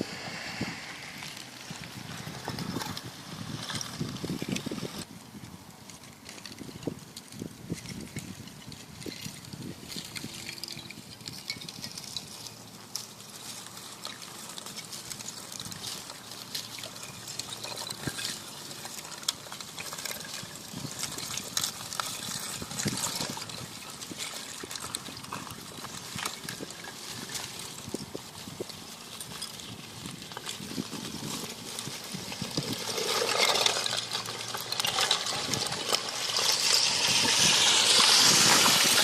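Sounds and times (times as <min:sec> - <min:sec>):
ice pieces clinking together: 0:07.8 - 0:39.0.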